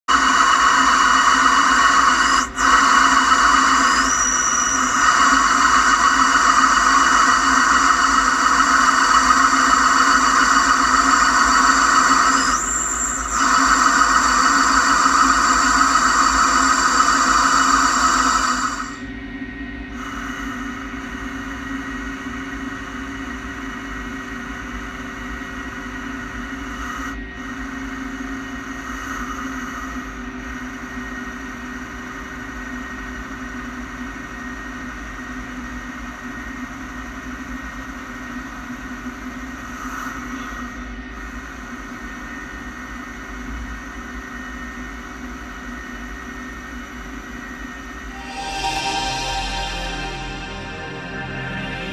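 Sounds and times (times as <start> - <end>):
lathe whining: 0.0 - 19.0, 48.1 - 51.9.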